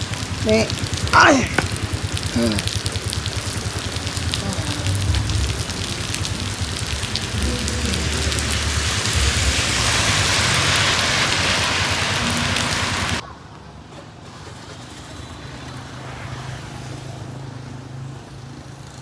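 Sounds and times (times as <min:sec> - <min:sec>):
heavy rain pouring: 0:00.0 - 0:13.2
raindrops ticking close by: 0:00.0 - 0:13.2.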